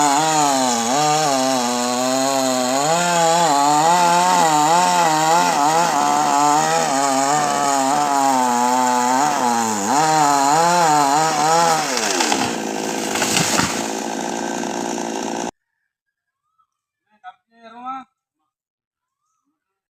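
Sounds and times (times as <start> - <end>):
chainsaw cutting a tree: 0.0 - 15.5
sharp wood crack: 0.0 - 15.5.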